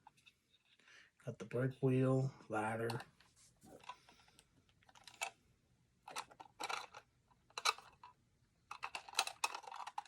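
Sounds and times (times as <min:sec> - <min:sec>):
toy train car clicking and rattling: 0:04.9 - 0:05.4, 0:06.0 - 0:10.0.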